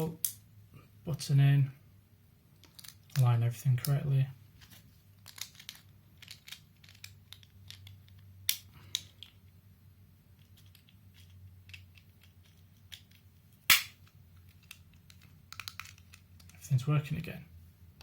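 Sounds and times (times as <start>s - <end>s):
plastic parts snapping into place: 11.7s - 16.6s.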